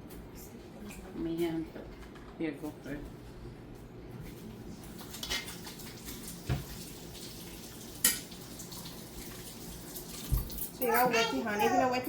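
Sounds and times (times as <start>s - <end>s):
dishes and utensils clinking: 8.0s - 8.3s.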